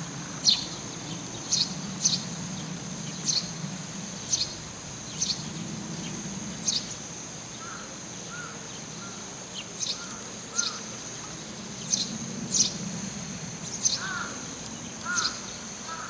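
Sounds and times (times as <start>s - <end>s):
lower bird calls: 13.6s - 16.0s.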